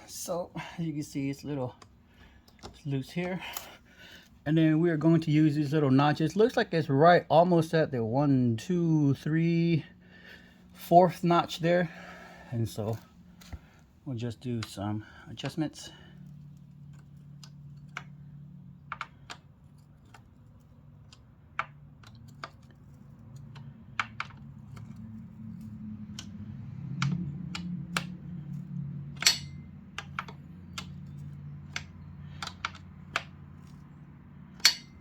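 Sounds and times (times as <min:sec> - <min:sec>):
low steady hum: 0:00.0 - 0:35.0
wrench clicking on bolts: 0:16.6 - 0:25.2, 0:26.0 - 0:35.0.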